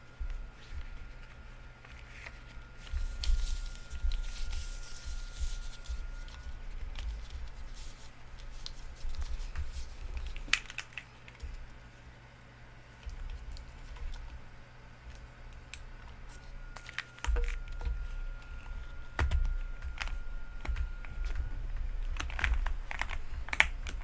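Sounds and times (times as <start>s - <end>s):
keyboard handling noise: 0.0s - 11.9s, 13.0s - 24.0s.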